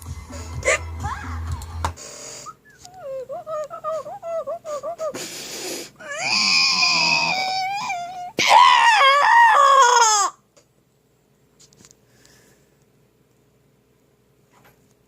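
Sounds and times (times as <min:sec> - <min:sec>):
person laughing: 0:00.5 - 0:01.4, 0:02.8 - 0:05.3.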